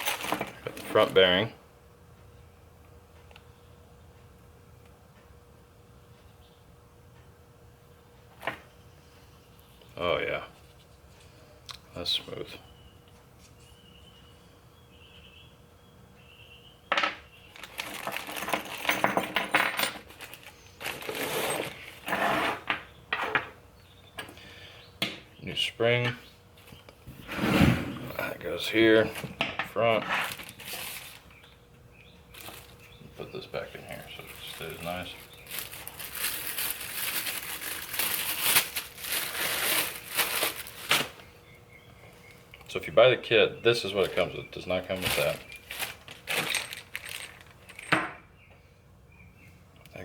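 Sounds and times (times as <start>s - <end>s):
plastic bag crinkling: 0.0s - 1.2s, 17.6s - 18.9s, 20.1s - 21.9s, 30.2s - 31.3s, 32.3s - 32.8s, 33.9s - 41.2s, 44.9s - 47.9s
small metal parts clinking: 16.9s - 22.2s, 45.0s - 48.2s.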